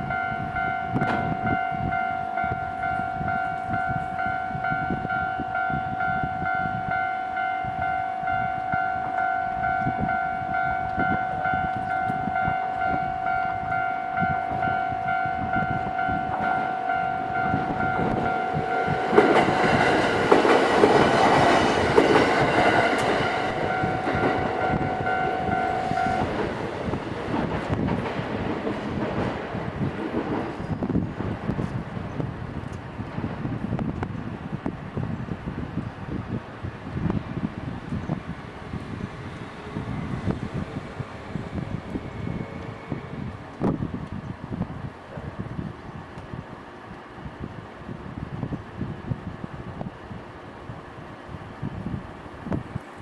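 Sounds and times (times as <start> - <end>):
level crossing alarm bell: 0.0 - 20.0, 22.1 - 26.4
train passing: 0.0 - 53.0.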